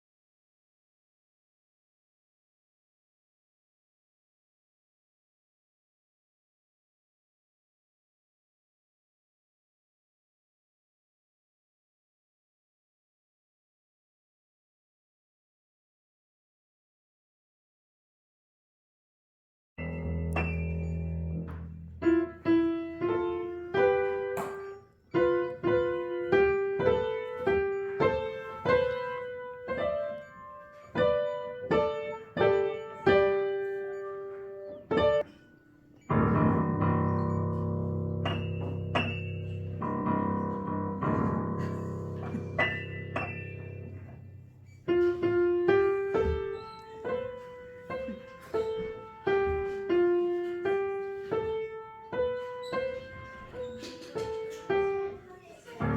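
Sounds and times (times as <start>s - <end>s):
solo piano music: 19.8s - 55.9s.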